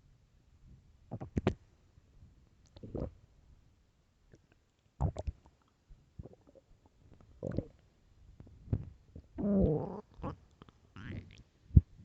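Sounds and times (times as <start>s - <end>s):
stomach growling: 1.1s - 1.6s, 2.8s - 3.2s, 5.0s - 5.5s, 6.2s - 7.8s, 8.7s - 11.9s.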